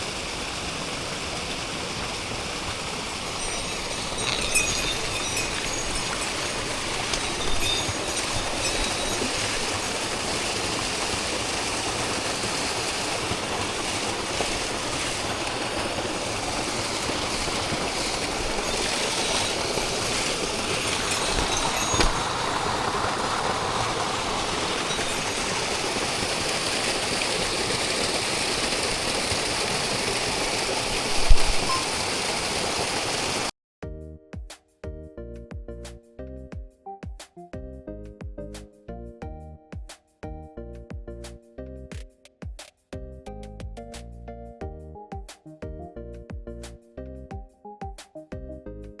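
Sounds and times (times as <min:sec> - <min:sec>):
stream water rushing over rocks: 0:00.0 - 0:33.5
music: 0:03.4 - 0:10.3, 0:17.4 - 0:22.2, 0:33.8 - 0:49.0.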